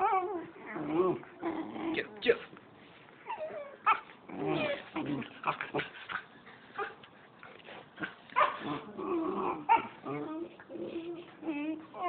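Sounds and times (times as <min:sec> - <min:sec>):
puppies yipping and whimpering: 0:03.2 - 0:05.0, 0:08.4 - 0:12.0.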